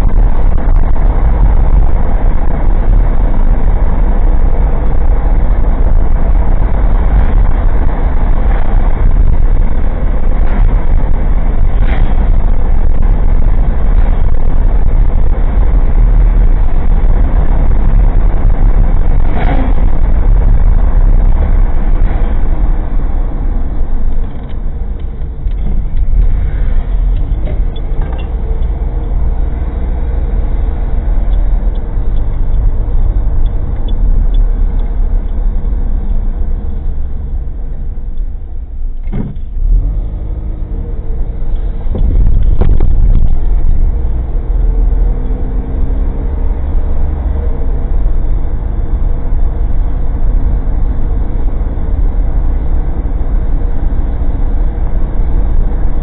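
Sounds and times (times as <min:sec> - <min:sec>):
car engine and road noise: 0:00.0 - 0:56.0
car body rattling: 0:38.8 - 0:39.6.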